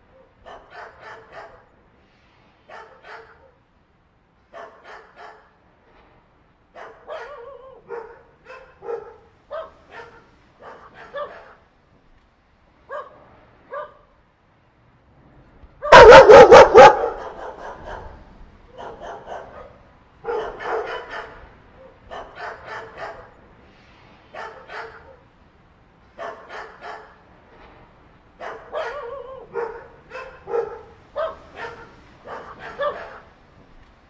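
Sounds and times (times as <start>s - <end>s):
dogs barking: 0.0s - 1.7s, 2.7s - 3.6s, 4.5s - 5.6s, 6.7s - 11.7s, 12.9s - 14.1s, 15.8s - 23.4s, 24.3s - 25.3s, 26.2s - 27.2s, 28.4s - 33.4s.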